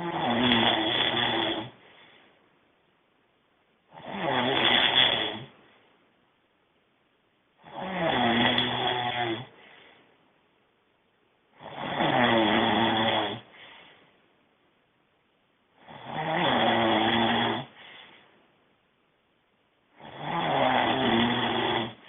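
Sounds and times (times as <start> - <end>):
man snoring loudly: 0.0 - 1.8, 3.9 - 5.5, 7.6 - 9.5, 11.6 - 13.5, 15.8 - 17.8, 20.0 - 22.0.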